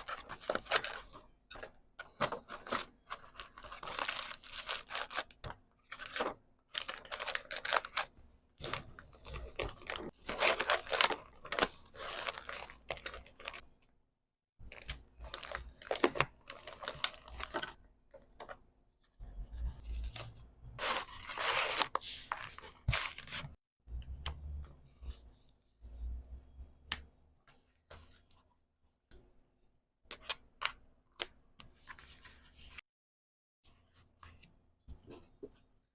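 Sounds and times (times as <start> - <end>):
packaging rustling: 5.9 - 13.6.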